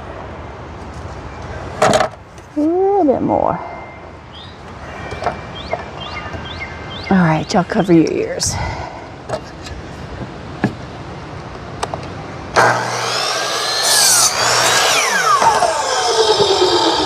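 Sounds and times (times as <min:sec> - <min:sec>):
power saw cutting wood: 0:12.6 - 0:17.0.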